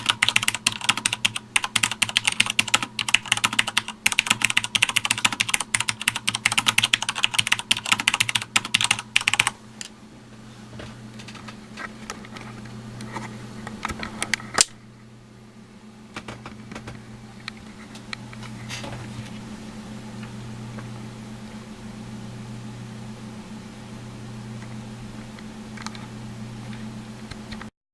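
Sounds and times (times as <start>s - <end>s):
mechanical keyboard typing: 0.0s - 9.6s.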